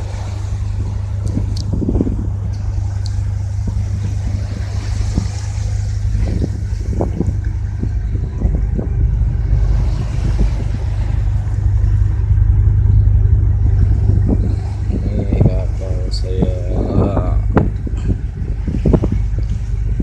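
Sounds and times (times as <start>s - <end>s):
diesel engine low drone: 0.0s - 20.0s.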